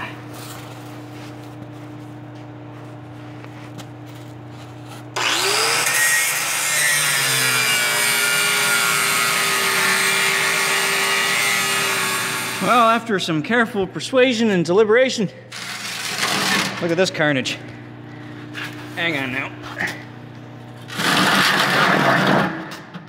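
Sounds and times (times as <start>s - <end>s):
steady low hum: 0.0s - 5.9s, 10.4s - 23.0s
angle grinder cutting steel: 5.2s - 12.8s.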